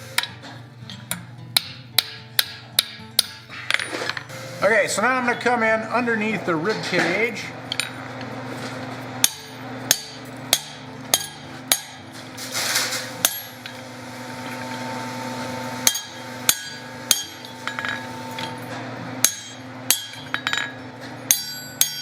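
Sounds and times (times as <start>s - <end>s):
hammer ringing on hot steel: 9.2s - 12.1s, 13.2s - 22.0s.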